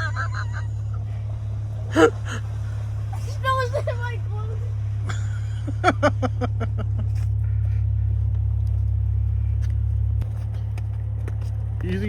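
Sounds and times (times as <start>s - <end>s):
car engine idling: 0.0s - 12.0s
knocks of snow being cleared: 0.0s - 12.0s.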